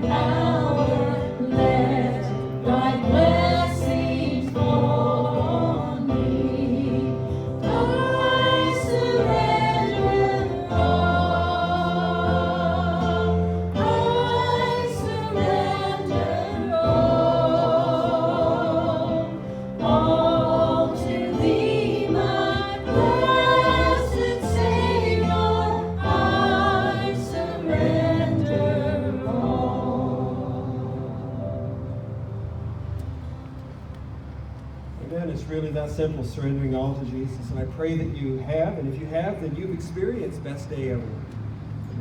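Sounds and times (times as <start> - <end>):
choir singing gospel: 0.0 - 32.5
low accompanying notes: 0.0 - 41.3.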